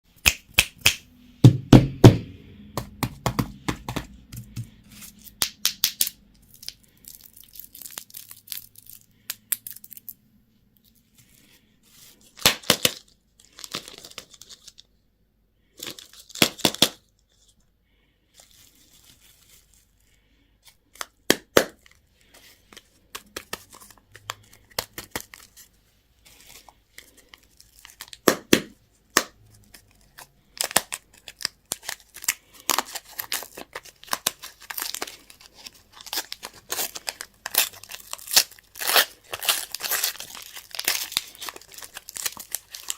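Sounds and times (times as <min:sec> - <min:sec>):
plastic wrappers crinkling: 0:03.9 - 0:10.2, 0:10.9 - 0:14.9, 0:15.8 - 0:17.5, 0:18.4 - 0:20.2, 0:21.8 - 0:28.4, 0:29.2 - 0:42.9.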